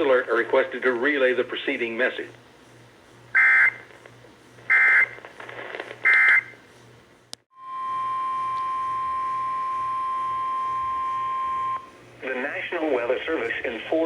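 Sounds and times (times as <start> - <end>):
steady warning alarm tone: 3.3 - 3.8, 4.7 - 5.2, 6.1 - 6.6, 7.5 - 12.0.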